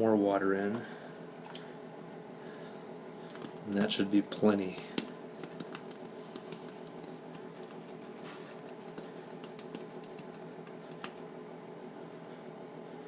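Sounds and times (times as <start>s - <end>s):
shaving brush squishing lather: 3.3s - 11.2s.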